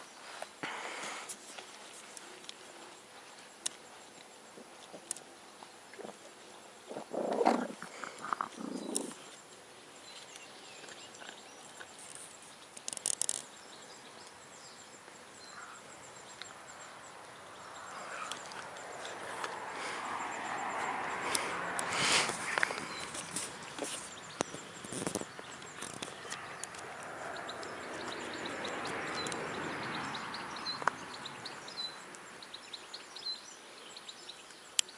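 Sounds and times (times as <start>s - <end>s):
dog growling: 6.9s - 9.2s.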